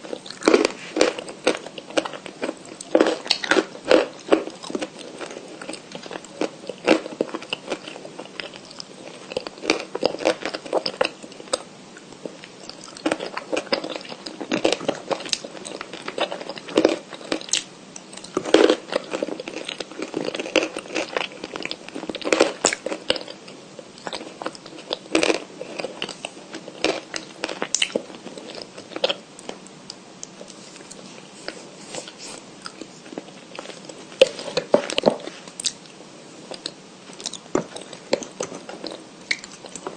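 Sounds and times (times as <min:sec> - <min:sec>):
chewing crunchy chalk: 0:00.0 - 0:23.4.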